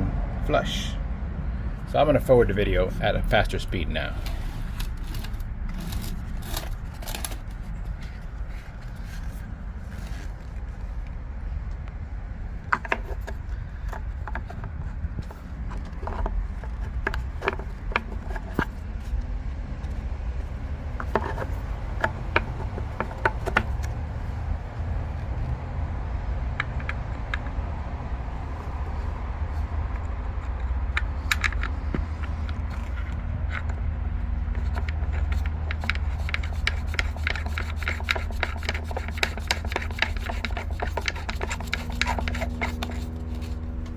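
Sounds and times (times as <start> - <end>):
steady low hum: 0.0 - 43.9
tools clicking and knocking: 21.0 - 24.0, 26.6 - 27.6, 29.9 - 43.9.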